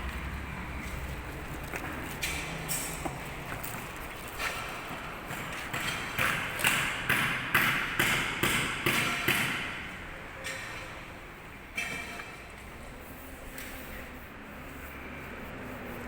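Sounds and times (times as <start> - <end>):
block making machine knocking: 5.3 - 9.8.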